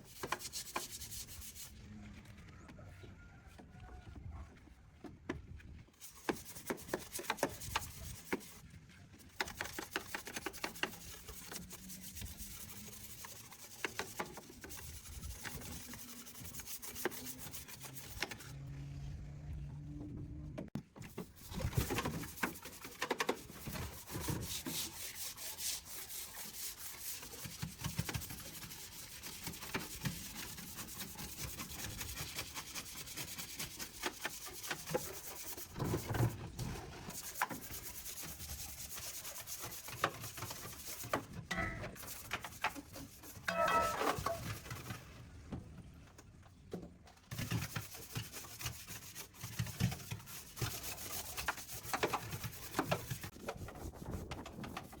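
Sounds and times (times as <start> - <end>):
hand scrubbing and scraping: 0.0 - 2.3, 5.6 - 18.6, 21.0 - 45.1, 47.3 - 55.0
squeaky scrape: 40.4 - 45.0.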